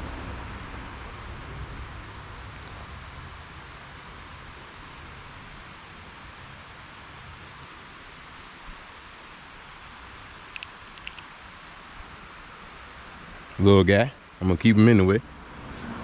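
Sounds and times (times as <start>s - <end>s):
outdoor background hiss: 0.0s - 16.0s
sharp clicks: 10.5s - 11.3s.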